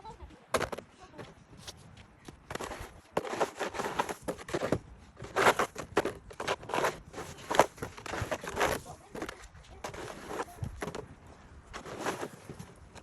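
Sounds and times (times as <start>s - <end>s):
shovel crunching and scraping snow: 2.5s - 11.0s, 11.7s - 12.8s.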